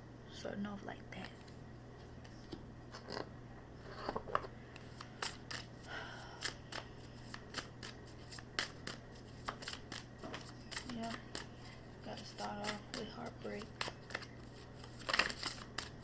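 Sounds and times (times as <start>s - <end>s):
cards shuffling and clicking: 4.0s - 5.7s, 6.4s - 16.0s.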